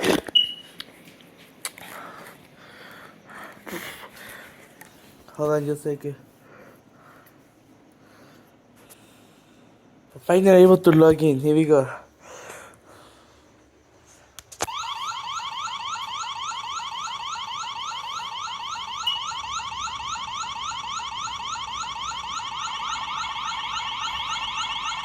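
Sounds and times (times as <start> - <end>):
electronic alarm rising sweeps: 14.7 - 25.0.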